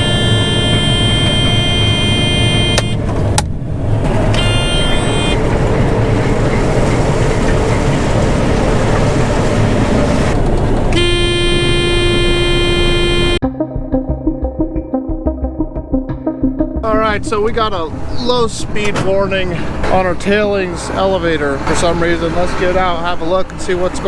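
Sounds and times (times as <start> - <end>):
warning alarm: 0.0 - 3.1, 4.0 - 13.4
combine harvester running: 0.0 - 13.4, 16.8 - 24.0.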